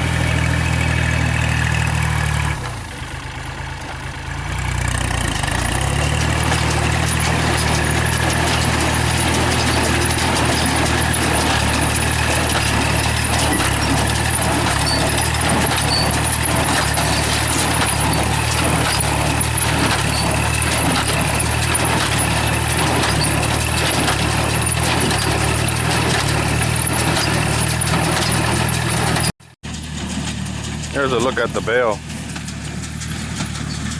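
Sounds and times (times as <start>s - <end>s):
tractor engine running: 0.0s - 33.9s
baler mechanism clattering: 5.3s - 31.4s.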